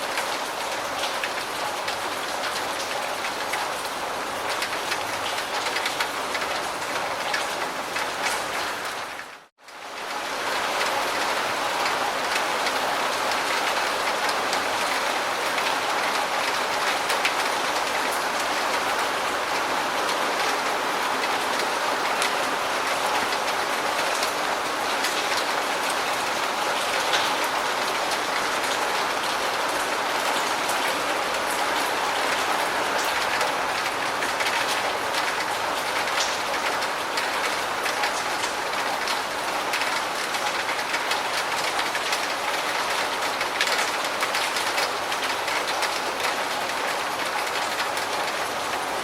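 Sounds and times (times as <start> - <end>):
steady rain hiss: 9.3 - 49.0
raindrops ticking: 21.2 - 48.8.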